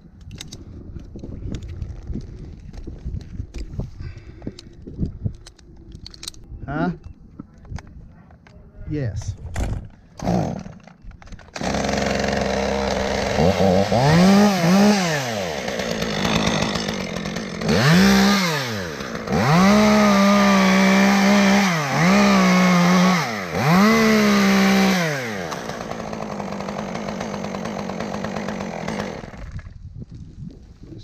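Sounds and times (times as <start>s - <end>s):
chainsaw revving and idling: 10.2s - 10.9s, 11.5s - 29.6s.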